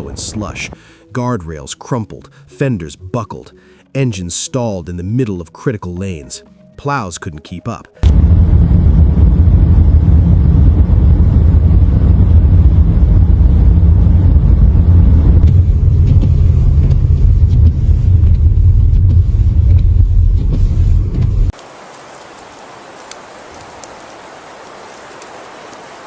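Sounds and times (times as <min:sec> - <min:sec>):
loud low rumble: 0:08.0 - 0:21.5.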